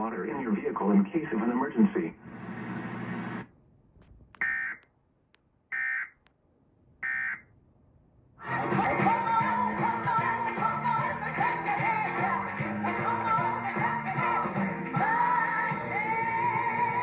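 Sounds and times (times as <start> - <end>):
broadcast music: 8.4 - 17.0.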